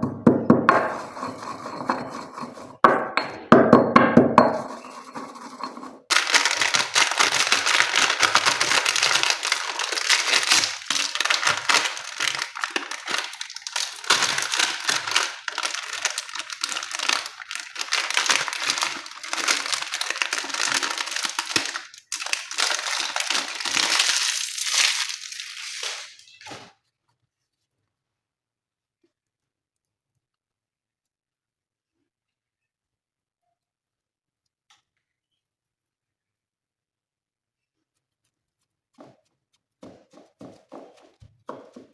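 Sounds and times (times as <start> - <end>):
crunching and crackling by hand: 6.1 - 26.8.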